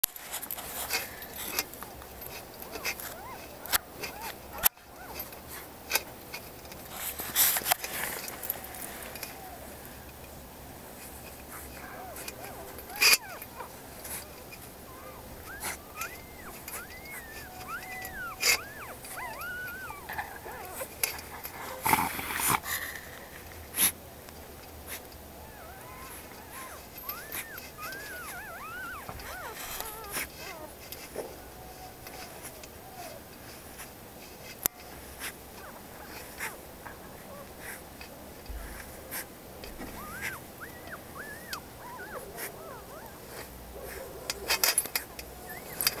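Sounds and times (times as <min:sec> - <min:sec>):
puppies whining: 0:00.0 - 0:10.4, 0:11.0 - 0:24.0, 0:24.6 - 0:46.0
rustling: 0:00.0 - 0:46.0.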